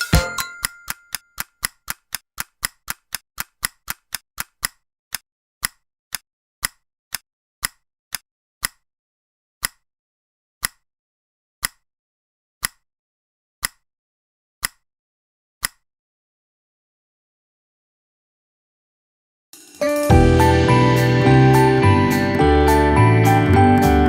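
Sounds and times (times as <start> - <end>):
sharp ticks: 0.6 - 8.8.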